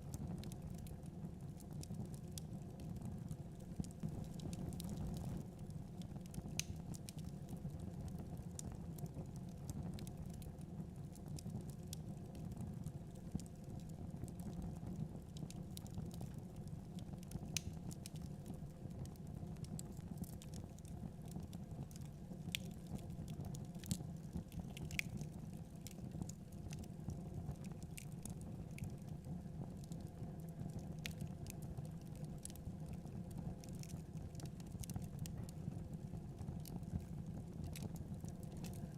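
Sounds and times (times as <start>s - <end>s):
logs crackling and popping: 1.7s - 8.8s, 15.4s - 35.6s, 36.2s - 38.9s.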